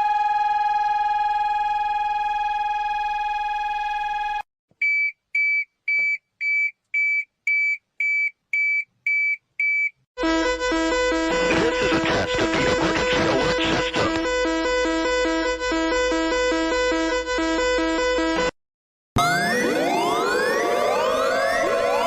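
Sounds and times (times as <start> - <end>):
horn-like alarm tone: 10.2 - 18.6.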